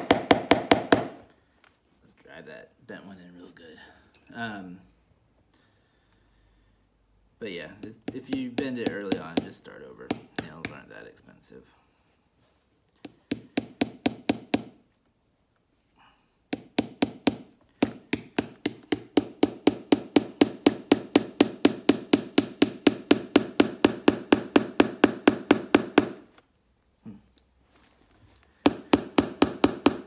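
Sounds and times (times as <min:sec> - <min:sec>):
hammer driving nails into leather: 0:00.0 - 0:01.3, 0:07.8 - 0:10.8, 0:13.0 - 0:14.8, 0:16.5 - 0:26.4, 0:28.6 - 0:30.0.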